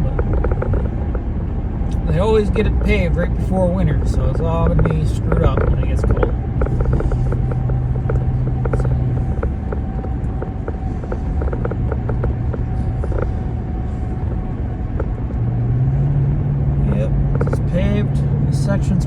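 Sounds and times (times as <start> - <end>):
ticks from road surface: 0.0 - 1.3, 1.9 - 15.8, 16.8 - 18.3
car engine and tyre drone: 0.0 - 19.0.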